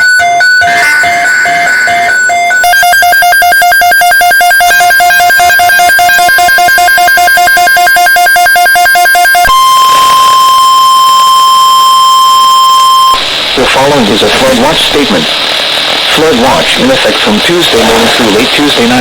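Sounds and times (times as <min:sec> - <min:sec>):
pulsing two-pitch electronic beeping: 0:00.0 - 0:13.4
steady loud alert tone: 0:00.0 - 0:15.1.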